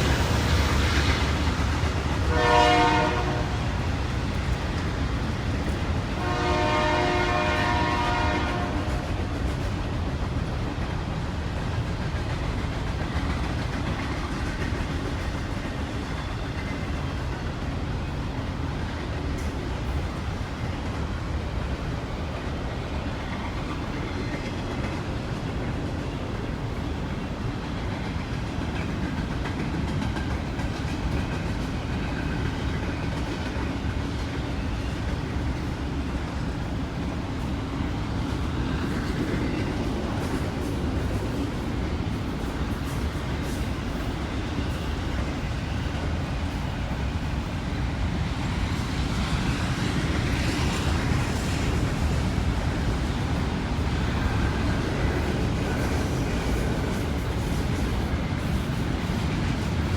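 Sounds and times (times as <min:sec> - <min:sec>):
train rumble and wheel clatter: 0:00.0 - 0:59.9
locomotive horn blasts: 0:02.2 - 0:03.7, 0:06.2 - 0:09.1.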